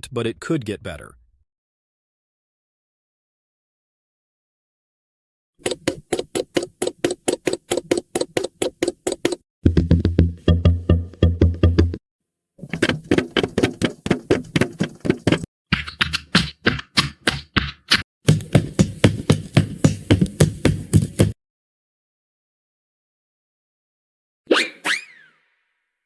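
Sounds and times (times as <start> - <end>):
cartoon running footstep taps: 5.6 - 12.0, 12.6 - 21.4.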